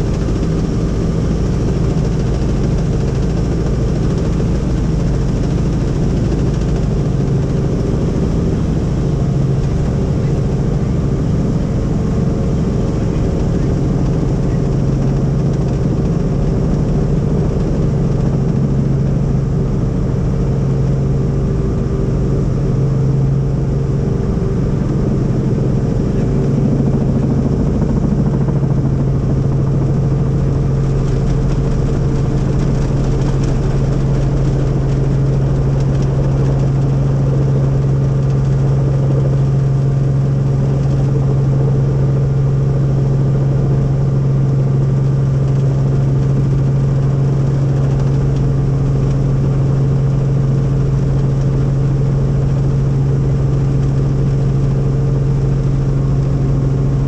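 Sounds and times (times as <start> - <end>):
helicopter engine and rotor drone: 0.0 - 57.0.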